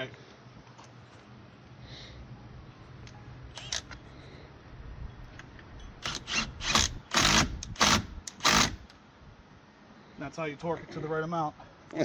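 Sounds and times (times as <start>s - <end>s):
rasping ratchet strokes: 6.0s - 8.9s
ratchet wrench clicks: 6.0s - 8.9s.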